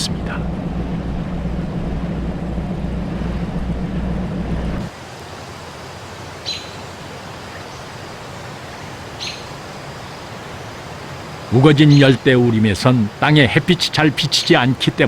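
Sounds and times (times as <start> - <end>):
low pulsing rumble: 0.0 - 4.9
forest ambience: 0.0 - 15.0.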